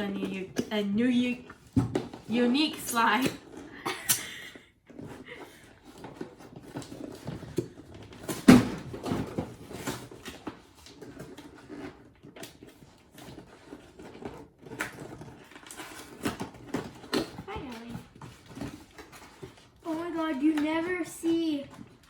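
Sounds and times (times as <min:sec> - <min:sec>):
packaging clicks and crinkles: 0:04.9 - 0:22.0.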